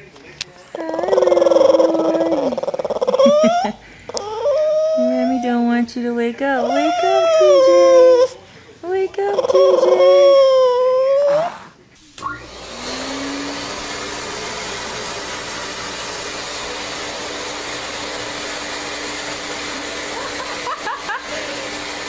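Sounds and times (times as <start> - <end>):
electric appliance rushing: 12.2 - 22.0.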